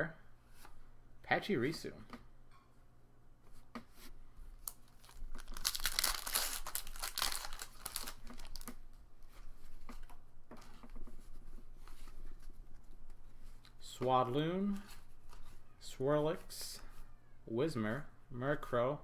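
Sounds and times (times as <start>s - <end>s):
wrapper and cards rustling: 4.0s - 17.1s
foil wrapper tearing and crinkling: 4.6s - 8.8s.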